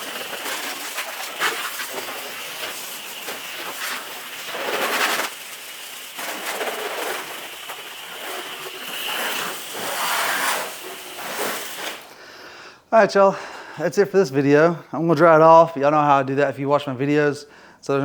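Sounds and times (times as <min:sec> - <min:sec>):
hose water spraying on car: 0:00.0 - 0:12.2.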